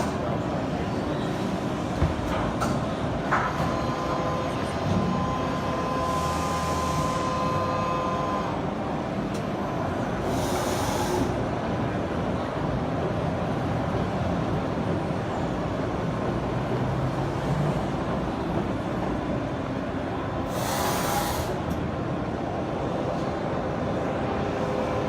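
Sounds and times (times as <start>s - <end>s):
hiss: 10.3s - 11.4s, 20.5s - 21.6s.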